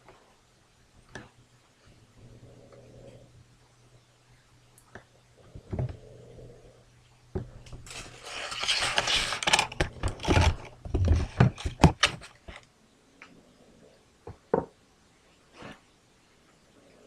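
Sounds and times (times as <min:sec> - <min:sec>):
rubbing and rustling: 0:07.7 - 0:12.7
device handling clicks and knocks: 0:09.0 - 0:12.6.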